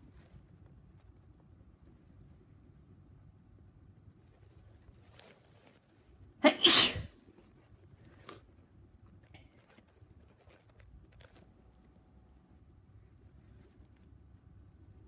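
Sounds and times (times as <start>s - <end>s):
person sneezing: 6.4s - 7.2s.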